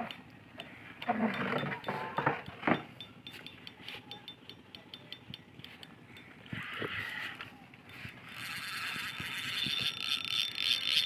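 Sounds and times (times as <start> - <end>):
fishing reel clicking: 6.5 - 11.0.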